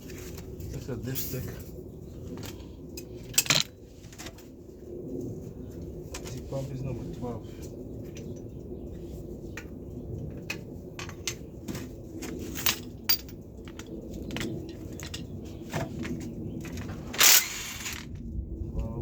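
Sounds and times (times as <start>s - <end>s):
metallic clatter: 12.5s - 15.2s
tools clinking on metal: 12.5s - 15.2s.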